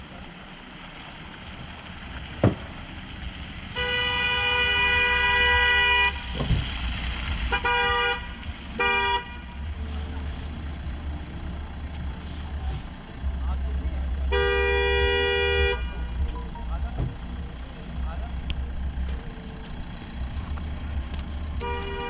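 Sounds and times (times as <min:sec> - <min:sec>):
engine rumbling: 0:00.0 - 0:22.0
vehicle horn blasts: 0:03.7 - 0:06.5, 0:07.5 - 0:09.7, 0:14.3 - 0:16.2, 0:21.6 - 0:22.0.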